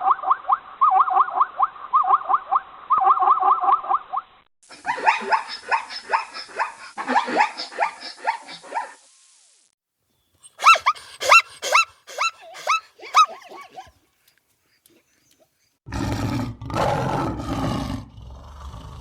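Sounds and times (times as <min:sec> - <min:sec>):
animal bark-like calls: 0:00.0 - 0:09.0, 0:10.5 - 0:14.0.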